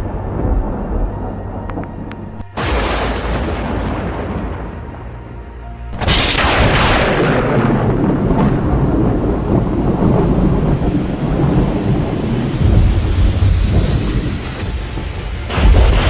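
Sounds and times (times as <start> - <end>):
dramatic background music: 0.0 - 16.0
booming magic blasts: 2.4 - 5.2, 5.9 - 16.0.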